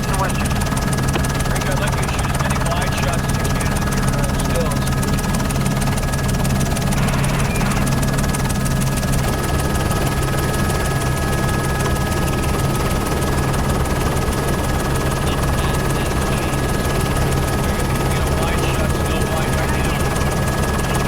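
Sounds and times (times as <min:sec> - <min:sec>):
helicopter rotor and engine drone: 0:00.0 - 0:21.0
faint high tones: 0:06.9 - 0:08.0.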